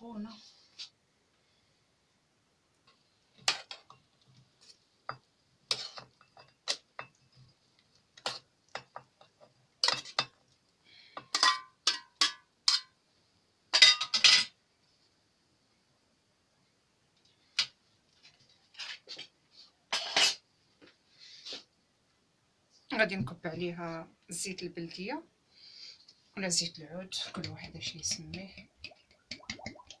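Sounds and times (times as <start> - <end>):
metal utensil clinking on dishes: 11.2 - 12.9.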